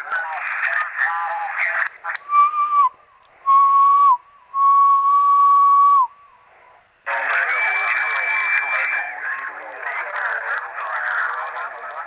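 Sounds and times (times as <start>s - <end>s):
whistle-like radio tone: 7.2s - 9.2s.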